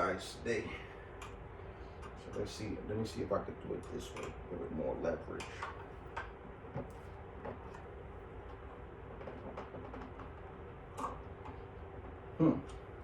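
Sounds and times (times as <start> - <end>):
steady low hum: 0.0 - 13.0
faint clicks and knocks of handling: 1.2 - 2.5, 5.4 - 12.9.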